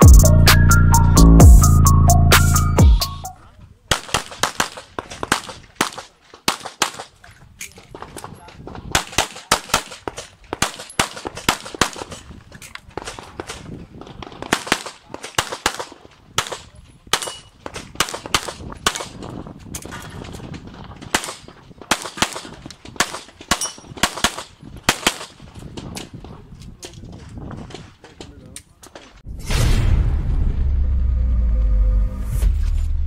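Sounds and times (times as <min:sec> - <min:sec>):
handgun shots: 0:03.9 - 0:07.2, 0:08.9 - 0:12.2.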